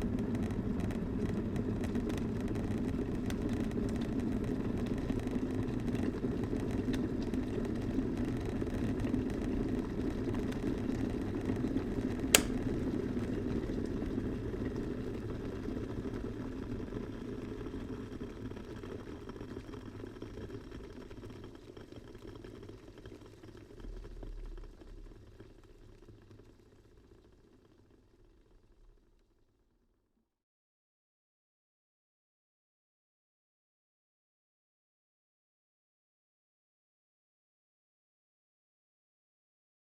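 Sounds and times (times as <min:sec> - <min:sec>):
electric kettle boiling: 0:00.0 - 0:23.8, 0:24.6 - 0:29.4
kettle switch click: 0:12.4 - 0:12.6.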